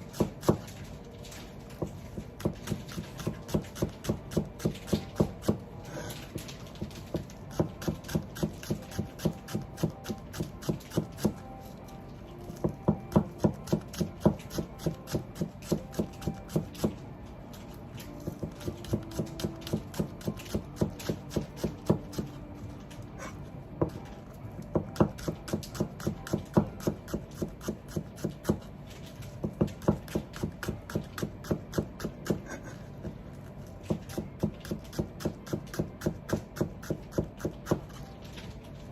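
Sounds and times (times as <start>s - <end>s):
knife chopping on cutting board: 1.8s - 11.4s, 12.6s - 17.0s, 24.7s - 28.6s.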